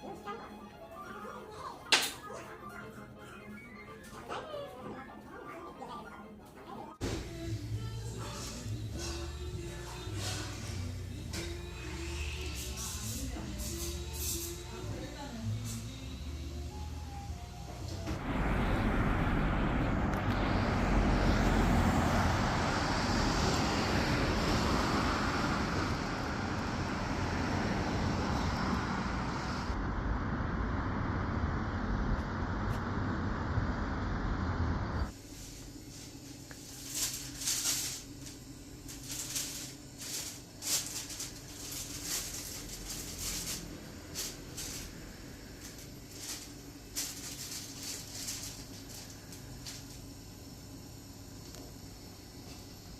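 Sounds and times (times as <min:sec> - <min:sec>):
road traffic noise: 0:07.3 - 0:35.2, 0:40.1 - 0:49.6.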